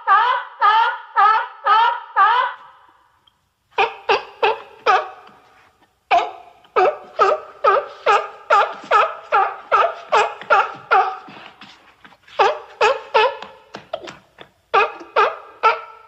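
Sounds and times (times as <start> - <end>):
sea lion barking: 3.8 - 5.5, 6.1 - 11.6, 12.4 - 13.7, 14.7 - 16.0.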